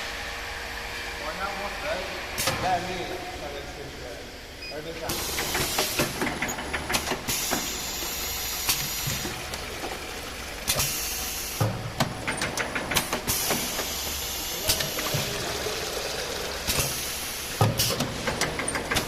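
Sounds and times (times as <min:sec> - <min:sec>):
sharp clicks and clacks: 0:12.0 - 0:13.9, 0:17.6 - 0:19.0.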